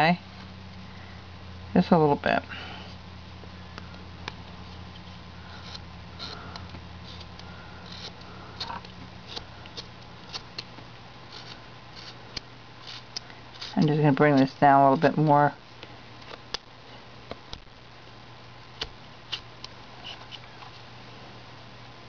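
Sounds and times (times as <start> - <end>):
steady low hum: 0.0 - 22.0
knife scraping wood: 4.7 - 10.7, 11.3 - 15.3, 18.8 - 20.8.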